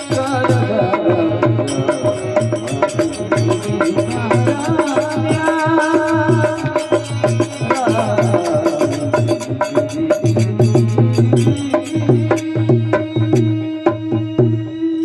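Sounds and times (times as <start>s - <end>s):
sharp clicking percussion: 0.0s - 14.1s
hand drum beat: 0.0s - 14.6s
wavering instrumental melody: 0.0s - 15.0s.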